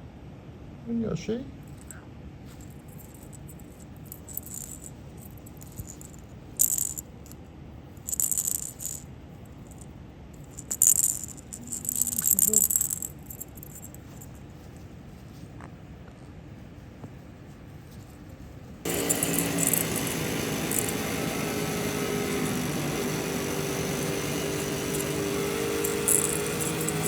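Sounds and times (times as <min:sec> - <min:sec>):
metallic cage rattling and jingling: 0:02.6 - 0:07.4, 0:08.0 - 0:09.0, 0:10.4 - 0:14.4, 0:18.9 - 0:27.0.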